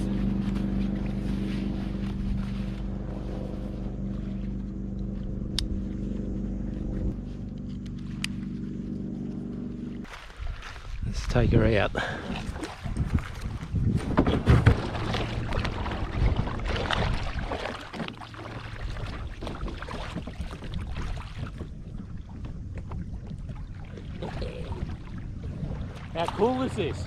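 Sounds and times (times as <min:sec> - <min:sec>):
wind on microphone: 0:10.4 - 0:17.6, 0:18.9 - 0:26.2
paddle strokes splashing: 0:12.0 - 0:27.0.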